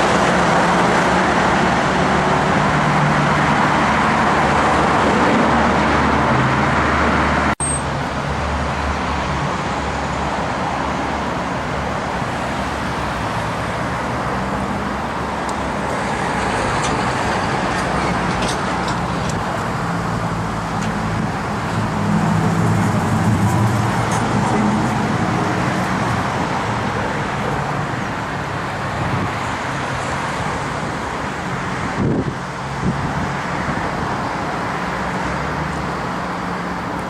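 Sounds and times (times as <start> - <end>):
tyre and wind noise: 9.4 - 37.0.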